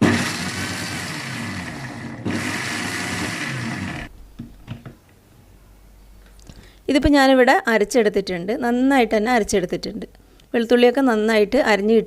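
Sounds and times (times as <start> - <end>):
mixer grinder running: 0.0 - 4.1.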